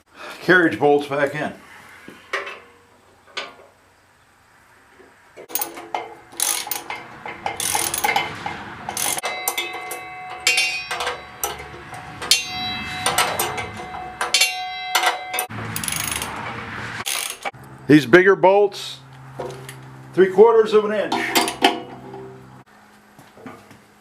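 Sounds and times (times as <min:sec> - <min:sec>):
metal parts clanking: 0:05.4 - 0:17.6, 0:21.1 - 0:22.4.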